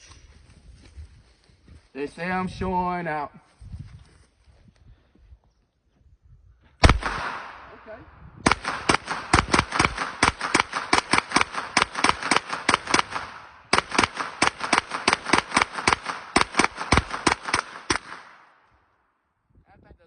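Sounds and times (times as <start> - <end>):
suppressed rifle rapid shots: 6.8 - 18.5.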